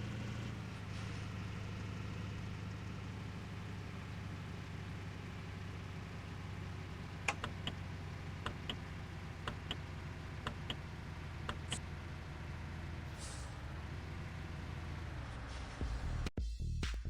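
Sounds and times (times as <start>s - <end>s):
truck engine running: 0.0s - 16.3s.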